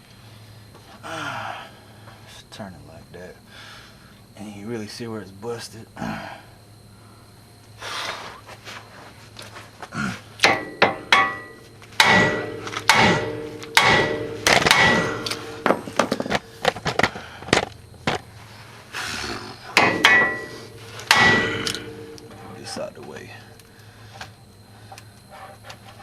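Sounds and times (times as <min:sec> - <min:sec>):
hammer striking steel: 0:10.4 - 0:16.2, 0:19.8 - 0:22.9.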